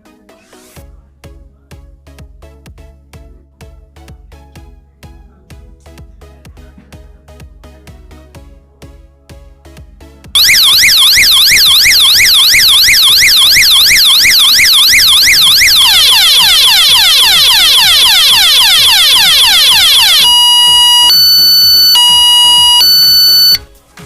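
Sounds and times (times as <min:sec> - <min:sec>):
electronic siren horn: 0:10.4 - 0:23.6.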